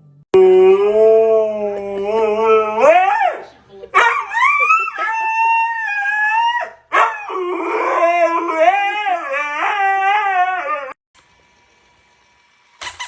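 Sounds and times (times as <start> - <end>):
dog howling: 0.3 - 11.0.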